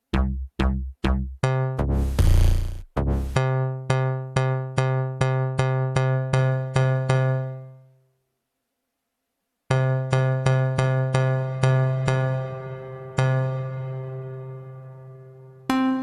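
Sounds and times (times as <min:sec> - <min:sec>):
repeated synth bass stab: 0:00.0 - 0:03.5.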